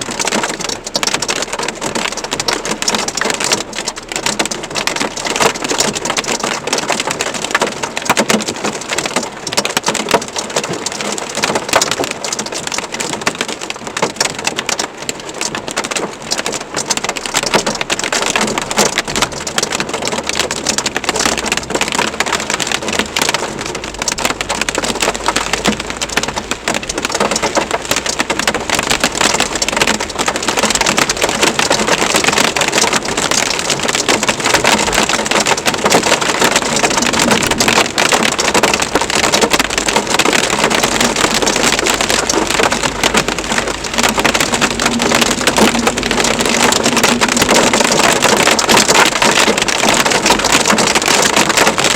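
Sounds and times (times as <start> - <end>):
heavy rain and hail pelting: 0.0 - 51.9
thunder rumbling: 28.8 - 51.3.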